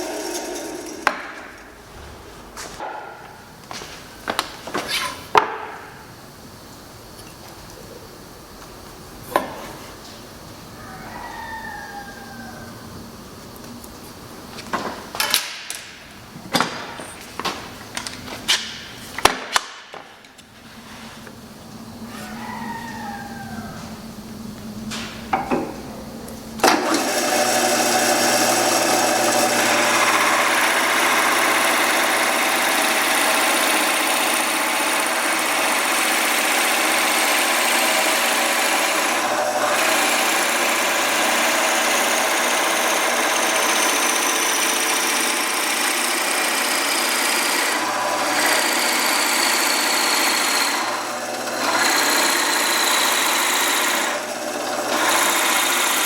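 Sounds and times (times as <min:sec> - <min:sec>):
electric woodworking tool running: 0:00.0 - 0:01.8, 0:23.8 - 0:56.0.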